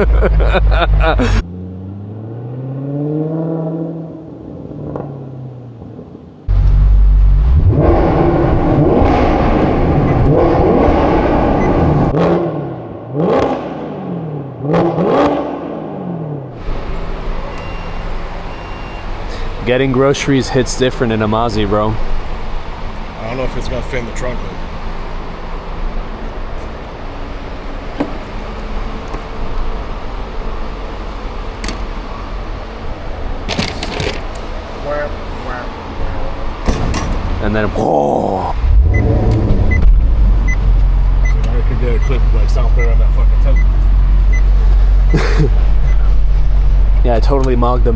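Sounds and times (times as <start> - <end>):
car engine revving: 0.0 - 5.8, 6.5 - 17.4, 34.5 - 47.9
car engine idling: 16.7 - 33.6, 38.6 - 47.9.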